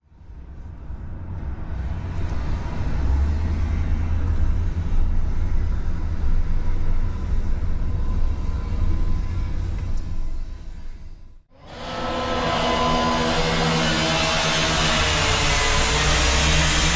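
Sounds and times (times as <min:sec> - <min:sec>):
road vehicle low rumble: 0:00.0 - 0:11.4.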